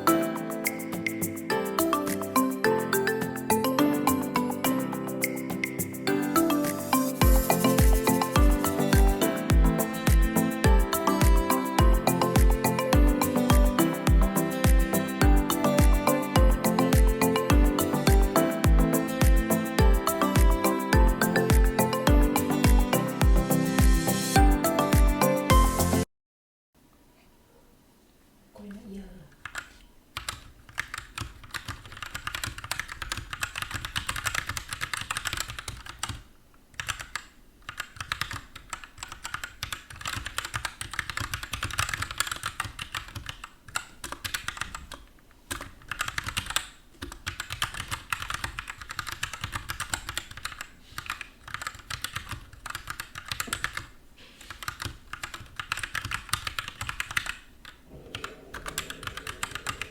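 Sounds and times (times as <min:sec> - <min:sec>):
mechanical keyboard typing: 0:29.4 - 0:59.9.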